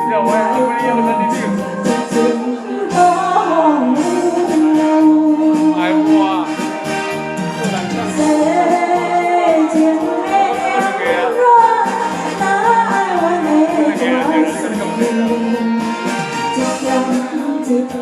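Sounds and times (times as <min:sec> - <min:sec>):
person singing wavering melody: 0:00.0 - 0:06.2, 0:13.0 - 0:18.0
band accompaniment: 0:00.0 - 0:18.0.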